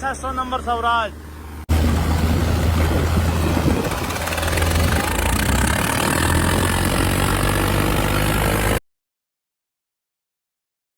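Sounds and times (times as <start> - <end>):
tractor engine running: 0.0 - 8.8.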